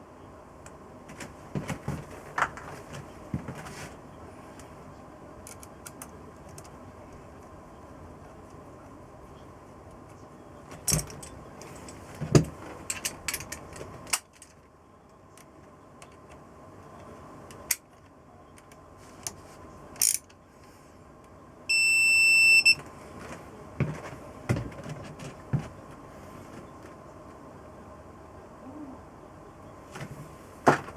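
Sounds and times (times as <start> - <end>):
electronic beep: 21.7 - 22.8.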